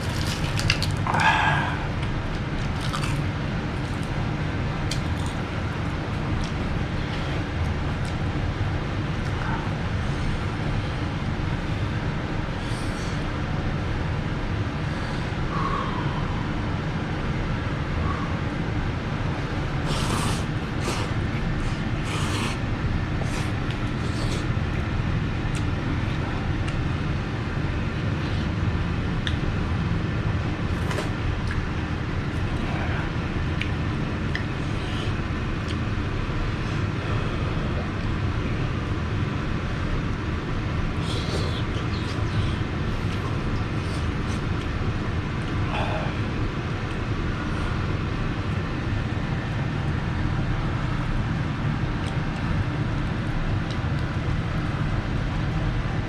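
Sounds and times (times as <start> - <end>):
slurping and clicking eating sounds: 0.0 - 4.2, 4.8 - 6.6, 19.8 - 22.6, 23.2 - 24.8, 30.7 - 31.7, 33.5 - 35.8, 41.0 - 44.8
low background rumble: 0.0 - 56.0.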